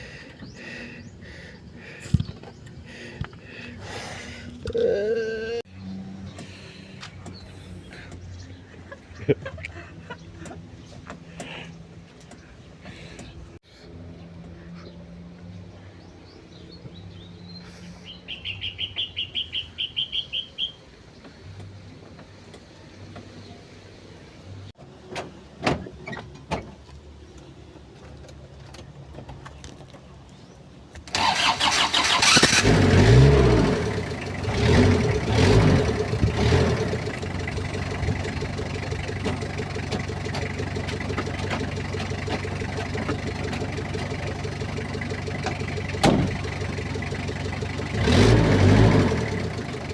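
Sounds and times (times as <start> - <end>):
diesel engine starting and revving: 31.0 - 49.9.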